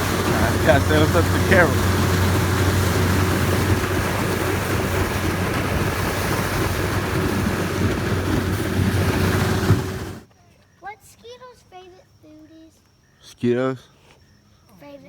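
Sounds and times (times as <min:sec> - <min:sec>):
vehicle engine rumble: 0:00.0 - 0:10.2.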